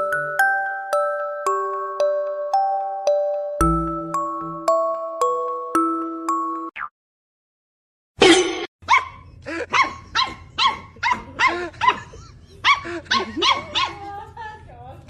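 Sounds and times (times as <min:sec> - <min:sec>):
dog barking rapidly: 0:08.8 - 0:14.1.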